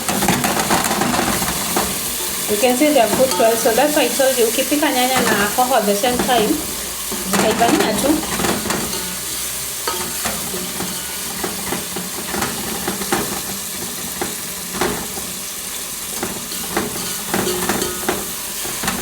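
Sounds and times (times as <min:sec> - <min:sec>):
utensil scraping and knocking pot: 0:00.0 - 0:15.4, 0:16.1 - 0:19.0
vegetables sizzling in a pot: 0:00.0 - 0:19.0.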